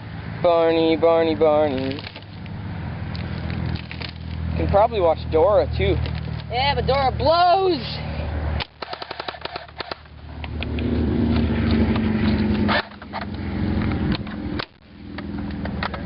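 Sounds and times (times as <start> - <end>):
airsoft rifle bursts: 8.6 - 10.1.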